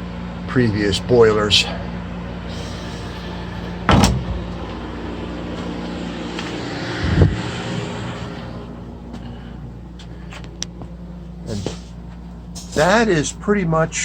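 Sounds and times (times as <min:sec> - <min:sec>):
low mechanical hum: 0:00.0 - 0:14.0
loud thump: 0:03.9 - 0:04.5.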